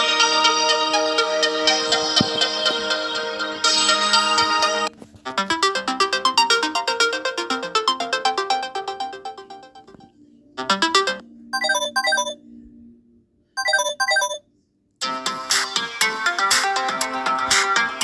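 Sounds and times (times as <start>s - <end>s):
melodic ringtone: 5.4s - 10.0s, 10.6s - 12.4s, 13.6s - 14.4s
busy electronic ringtone: 5.4s - 12.4s, 13.6s - 14.4s.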